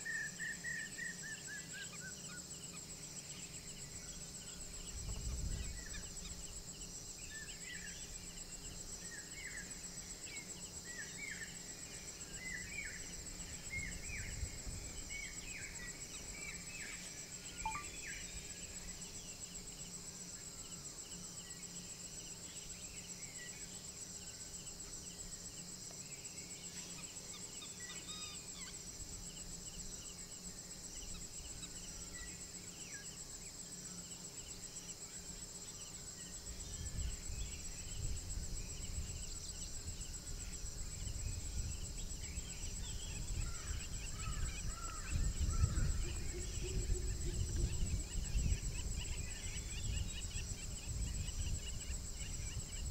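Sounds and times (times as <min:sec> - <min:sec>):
crickets trilling: 0:00.0 - 0:52.9.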